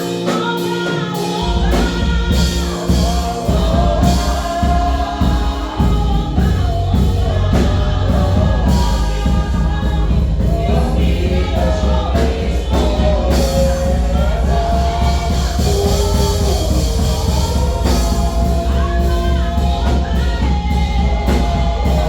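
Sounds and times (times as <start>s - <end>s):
choir singing gospel: 0.0s - 22.0s
musical backing: 0.0s - 22.0s.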